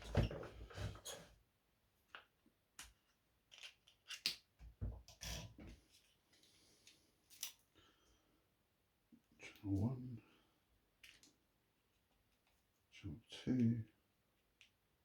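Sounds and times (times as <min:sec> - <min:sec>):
clicks and knocks of small objects: 0:02.1 - 0:04.7, 0:11.0 - 0:11.4.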